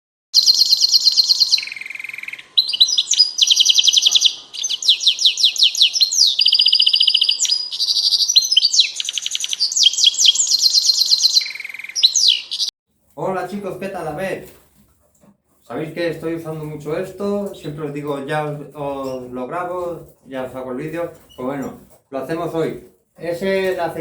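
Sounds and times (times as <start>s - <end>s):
songbird singing fast trills: 0.4s - 12.7s.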